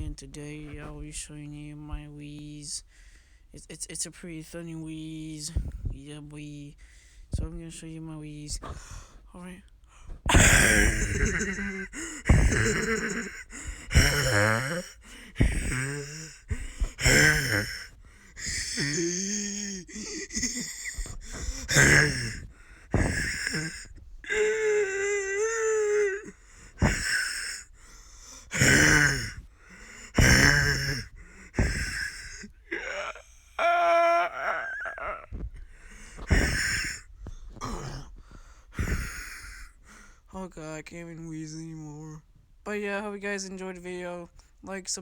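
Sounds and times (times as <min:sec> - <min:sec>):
person wheezing: 0:10.1 - 0:40.2.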